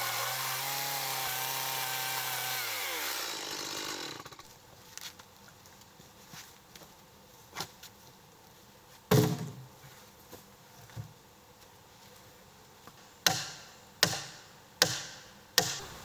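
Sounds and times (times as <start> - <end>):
chainsaw engine winding down: 0.0 - 4.4.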